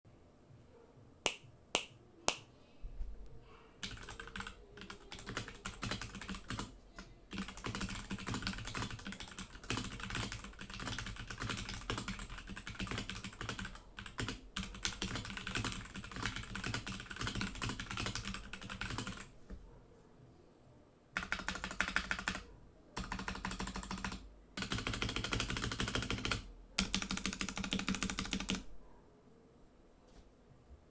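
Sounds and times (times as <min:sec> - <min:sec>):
mechanical keyboard typing: 0:03.8 - 0:19.3, 0:21.2 - 0:28.7.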